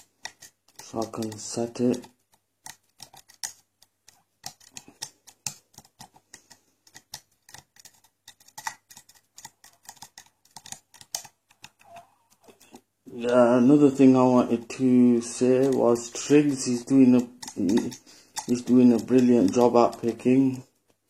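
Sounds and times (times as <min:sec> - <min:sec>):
lock pick clicking and scraping: 0:02.6 - 0:12.8, 0:15.6 - 0:20.1.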